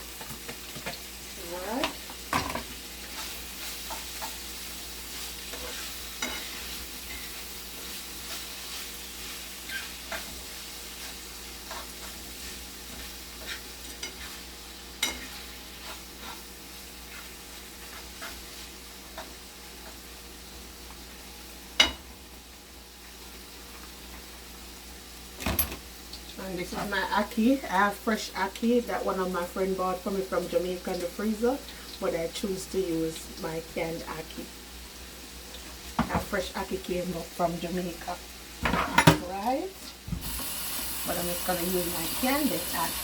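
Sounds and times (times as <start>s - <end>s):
food sizzling in frying pan: 0.0s - 43.0s
utensil stirring against pan: 0.1s - 21.2s.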